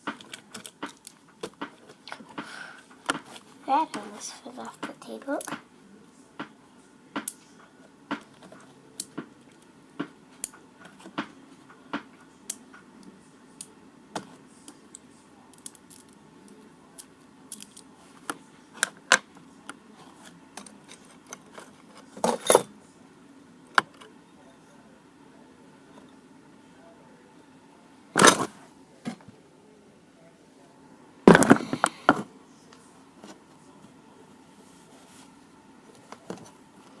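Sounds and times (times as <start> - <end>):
objects clattering: 28.2 - 29.2, 31.3 - 32.2.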